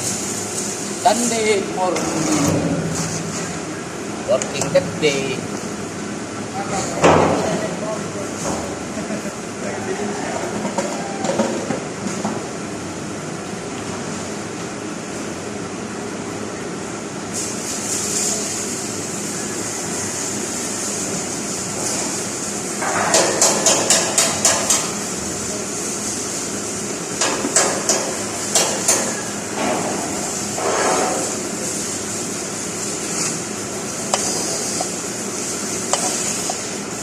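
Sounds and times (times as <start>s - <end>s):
steady hiss: 17.3s - 37.0s.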